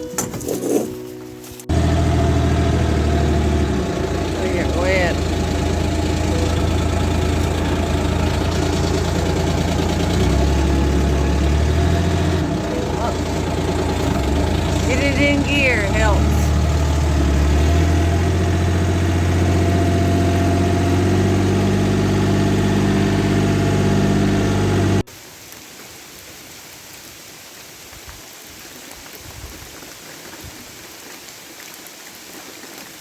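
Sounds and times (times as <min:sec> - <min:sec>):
rain falling on surfaces: 0:01.7 - 0:18.1, 0:25.0 - 0:33.0.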